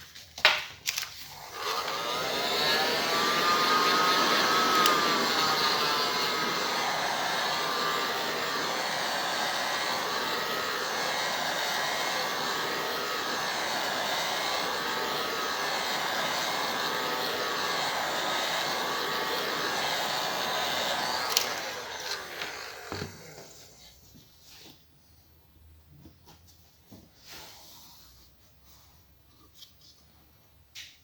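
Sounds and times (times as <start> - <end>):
heat gun blowing hot air: 1.2 - 24.0.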